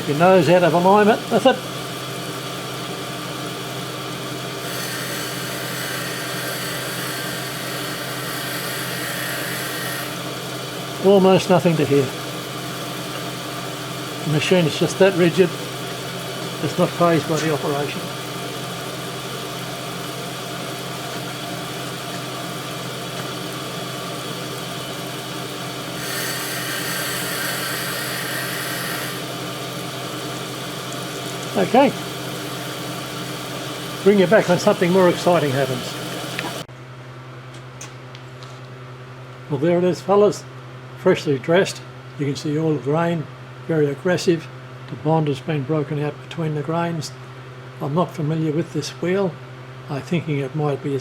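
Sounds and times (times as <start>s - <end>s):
grinder humming with hiss: 0.0s - 36.7s.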